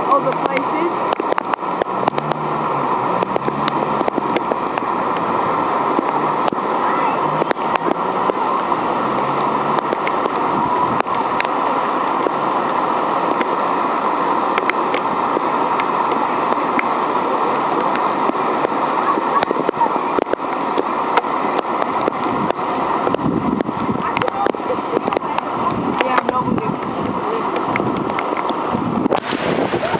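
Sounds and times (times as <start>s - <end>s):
floodwater rushing: 0.0s - 29.9s
water splashing: 0.0s - 29.9s.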